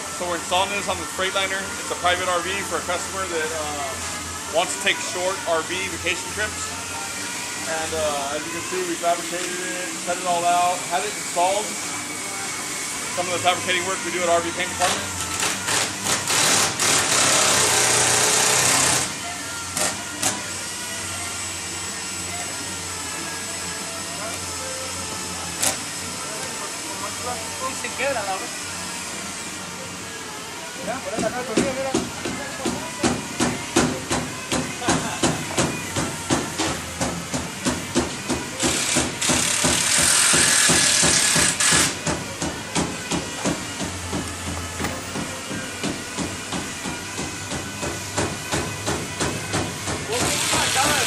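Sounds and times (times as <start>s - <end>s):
power tool hissing: 7.6s - 20.4s, 38.6s - 42.1s, 49.8s - 51.0s
loud air hiss: 38.6s - 42.1s.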